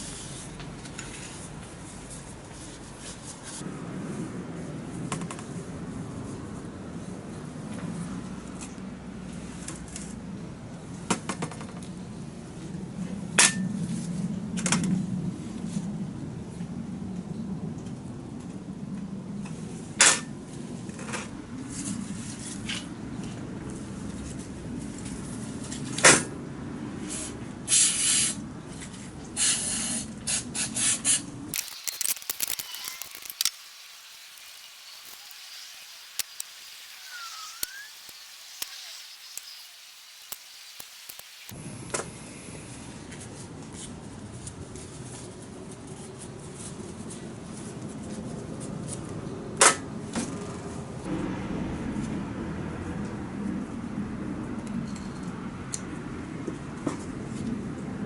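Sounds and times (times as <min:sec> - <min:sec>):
small parts clicking and tapping: 0:31.6 - 0:41.5
aerosol spray hissing: 0:31.6 - 0:41.6.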